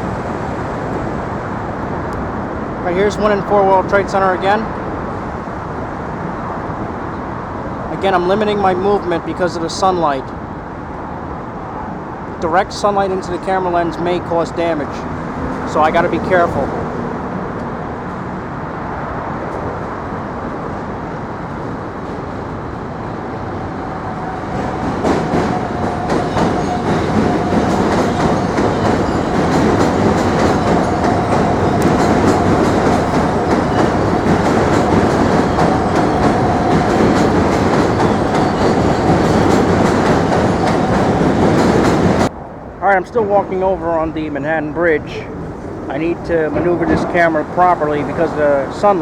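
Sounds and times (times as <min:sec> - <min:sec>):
subway train wheels clattering: 0:00.0 - 0:42.6, 0:45.0 - 0:49.0.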